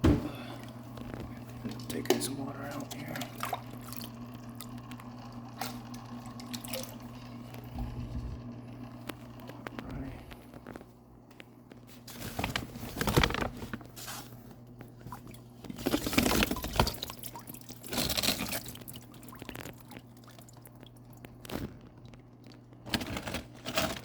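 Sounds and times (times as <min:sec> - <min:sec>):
water splashing in a bucket: 0:01.1 - 0:08.4, 0:14.9 - 0:23.1.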